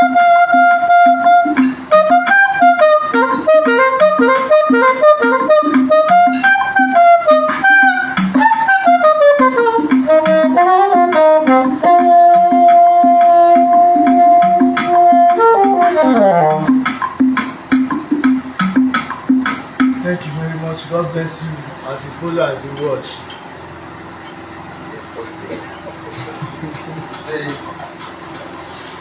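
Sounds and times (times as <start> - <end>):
saxophone playing hymn melody: 0.0 - 17.1
backing accompaniment: 0.0 - 28.3.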